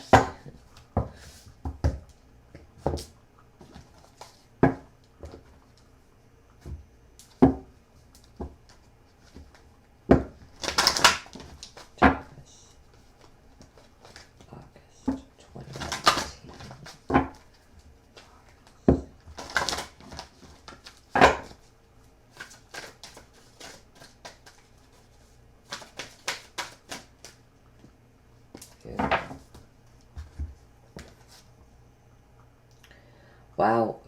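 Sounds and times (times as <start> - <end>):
cards shuffling: 2.9 - 4.4, 10.4 - 14.5, 15.1 - 21.7, 22.3 - 27.4.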